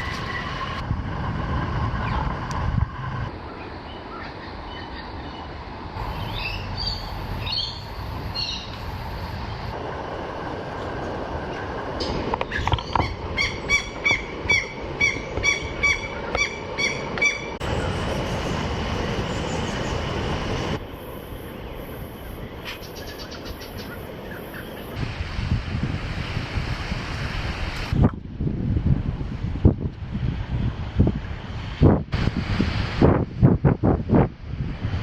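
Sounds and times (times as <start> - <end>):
water noise: 0.0 - 35.0
wind: 0.0 - 35.0
bird calling sharp notes: 12.5 - 17.9.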